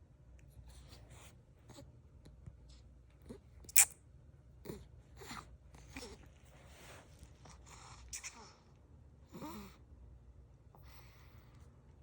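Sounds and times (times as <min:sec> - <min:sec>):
baby snoring softly: 0:09.3 - 0:09.8.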